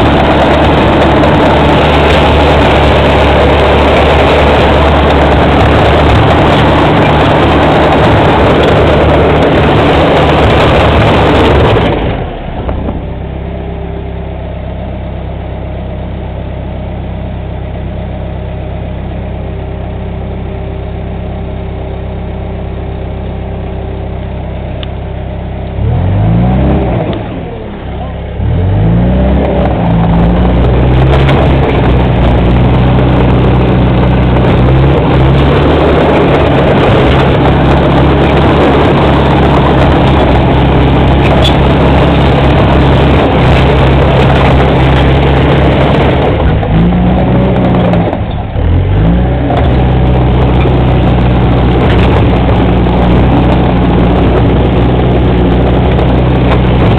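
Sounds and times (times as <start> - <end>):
bulldozer diesel engine: 0.0 - 56.9.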